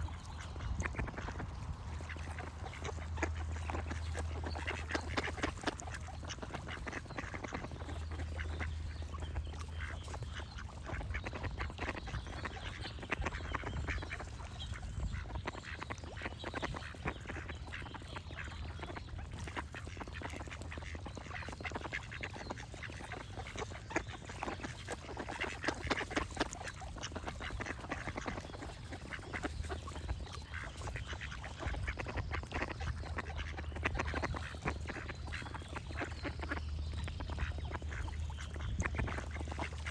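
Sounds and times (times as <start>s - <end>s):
small birds singing: 0.0s - 39.9s.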